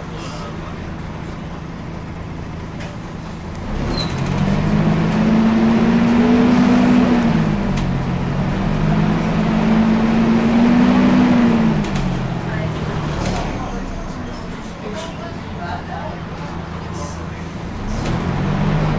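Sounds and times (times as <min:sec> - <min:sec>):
bus diesel engine: 0:00.0 - 0:18.9
engine cooling fan: 0:00.0 - 0:18.9.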